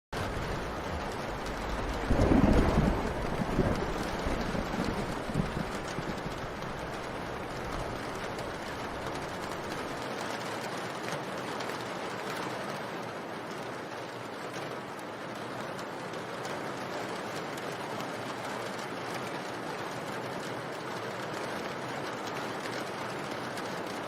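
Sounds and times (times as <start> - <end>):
faint raindrop taps: 0.2 - 12.7
steady rain hiss: 0.2 - 24.0.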